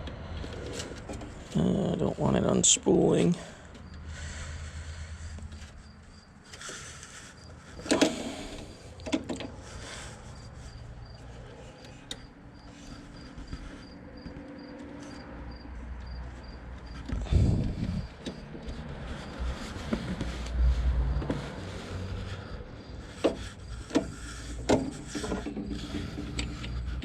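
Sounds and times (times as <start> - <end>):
steady low hum: 0.0 - 27.0
clicks and knocks of metal parts: 23.2 - 26.8.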